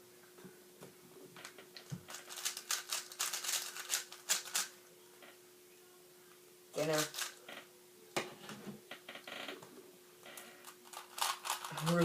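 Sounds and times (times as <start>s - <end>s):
faint hum: 0.0s - 12.0s
puzzle cube clicking turns: 2.1s - 4.7s, 10.6s - 12.0s.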